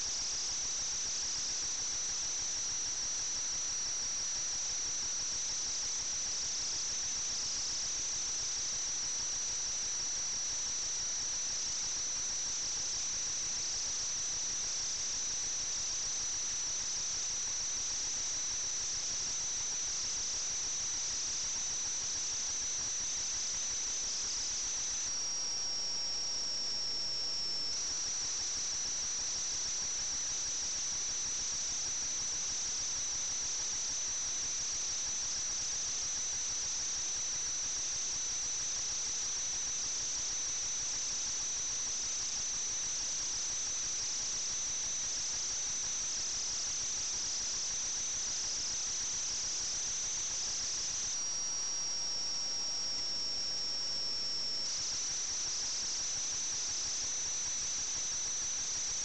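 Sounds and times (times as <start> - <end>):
high-pitched whine: 50.1 - 58.5.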